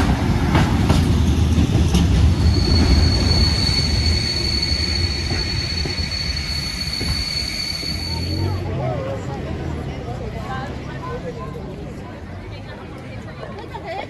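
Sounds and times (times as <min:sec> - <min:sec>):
rail clicks: 0:00.0 - 0:08.6
train rumbling over rails: 0:00.0 - 0:12.9
high-pitched wheel squeal: 0:02.3 - 0:08.8.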